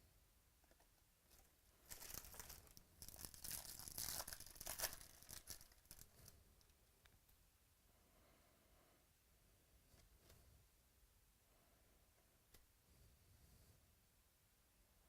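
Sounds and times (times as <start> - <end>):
foil wrapper tearing and crinkling: 1.9 - 6.4.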